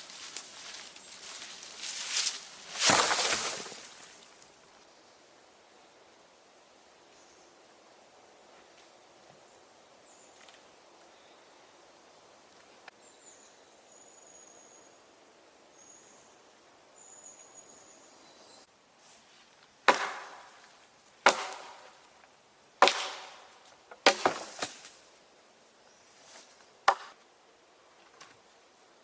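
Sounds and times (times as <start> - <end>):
axe chopping wood: 19.9 - 22.0, 22.8 - 24.9, 26.9 - 27.2.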